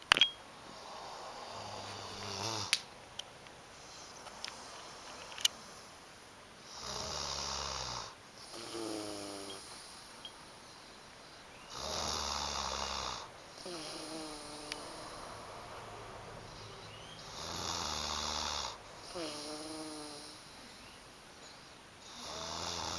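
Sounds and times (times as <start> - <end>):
person snoring: 0.8 - 2.7, 6.7 - 10.1, 11.7 - 20.8, 22.0 - 22.9.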